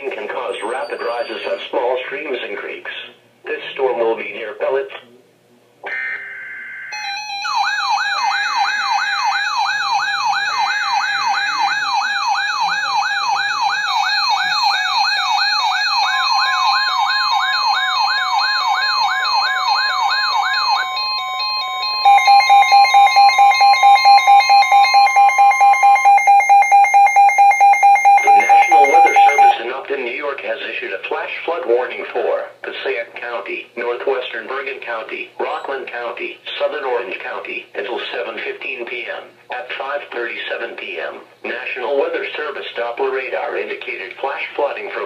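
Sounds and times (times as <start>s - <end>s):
pulsing alarm tone: 5.9s - 29.6s
wailing electronic siren: 6.9s - 29.6s
steady single alert tone: 20.9s - 29.5s.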